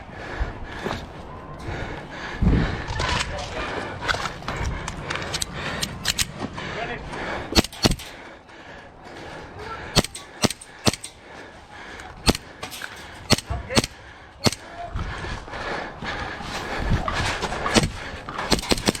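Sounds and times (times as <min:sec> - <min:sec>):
airsoft gun shots: 0:07.6 - 0:08.1, 0:10.0 - 0:11.1, 0:12.2 - 0:12.7, 0:13.3 - 0:14.6, 0:17.8 - 0:19.0.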